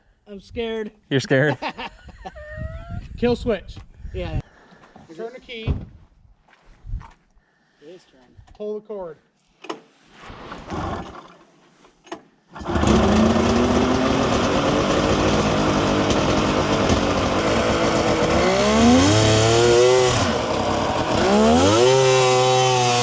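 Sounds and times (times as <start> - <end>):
snowmobile engine running loud: 12.8 - 23.0.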